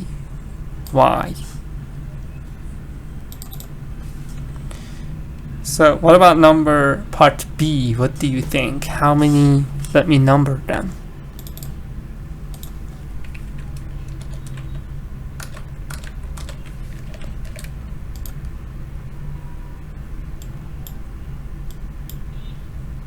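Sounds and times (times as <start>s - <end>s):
steady low hum: 0.0s - 23.0s
keyboard typing clicks: 3.3s - 3.7s, 11.3s - 11.8s, 12.5s - 18.6s.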